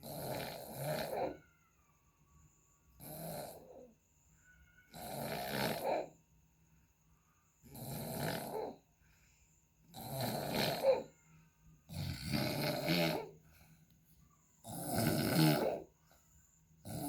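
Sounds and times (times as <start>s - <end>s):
person snoring: 0.0s - 1.4s, 3.0s - 3.9s, 4.9s - 6.1s, 7.6s - 8.8s, 9.9s - 11.1s, 11.9s - 13.4s, 14.6s - 15.9s.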